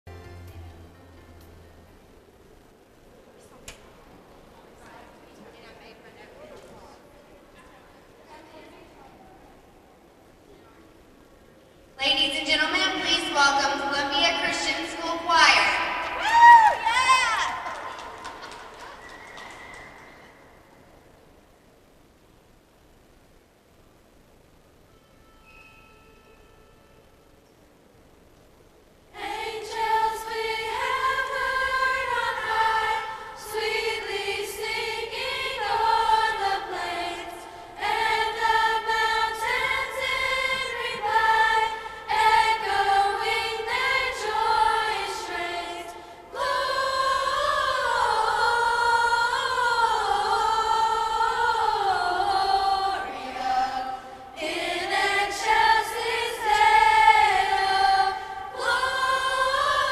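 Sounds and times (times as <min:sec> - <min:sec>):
choir singing a cappella: 0:29.1 - 0:59.9.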